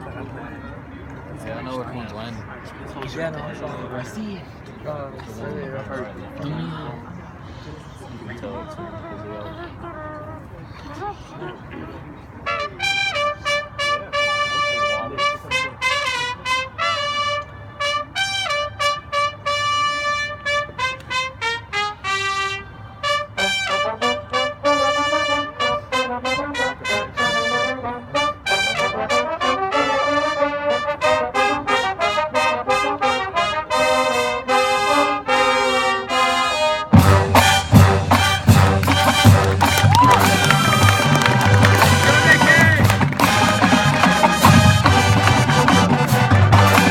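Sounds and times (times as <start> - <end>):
lower brass playing: 12.4 - 46.9
trumpets playing rhythmic phrases: 12.4 - 46.9.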